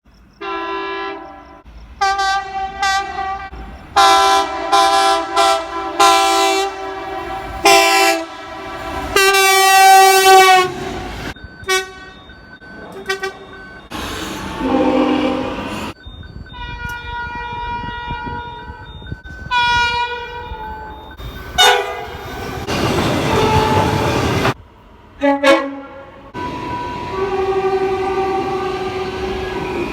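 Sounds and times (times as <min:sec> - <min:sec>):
train horn blasts: 0:00.4 - 0:12.1, 0:13.0 - 0:13.4, 0:14.4 - 0:16.0, 0:16.6 - 0:18.9, 0:19.5 - 0:20.6, 0:21.6 - 0:22.4, 0:23.2 - 0:24.3, 0:25.2 - 0:29.9.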